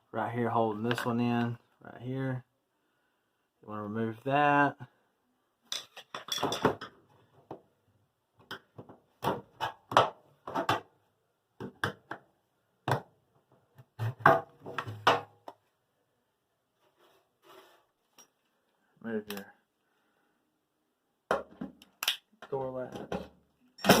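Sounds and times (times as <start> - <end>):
plastic parts clicking and knocking: 21.3 - 24.0.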